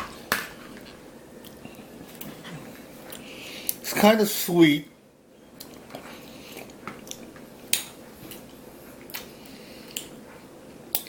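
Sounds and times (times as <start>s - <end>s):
person chewing soft fruit: 0.5s - 3.8s, 5.5s - 11.0s.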